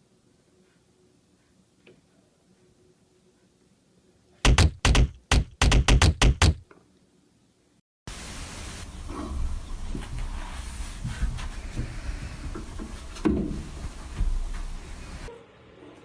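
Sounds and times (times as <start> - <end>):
loud knocks: 4.4 - 6.6.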